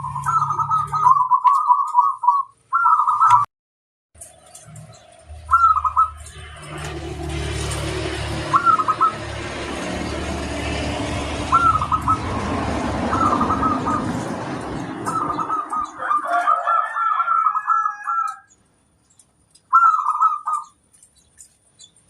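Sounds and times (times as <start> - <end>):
dove cooing: 0.0 - 3.4, 5.4 - 6.8, 8.4 - 9.3, 11.4 - 18.4, 19.7 - 20.7
steady rushing noise with rumble: 6.2 - 16.2.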